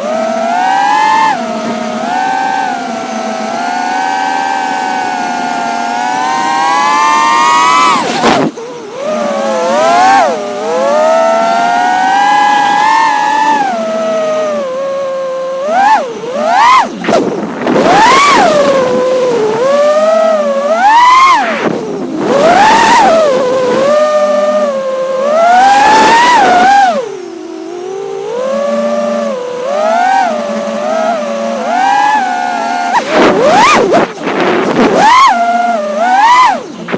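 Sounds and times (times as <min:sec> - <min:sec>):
drone motors whining: 0:00.0 - 0:36.9.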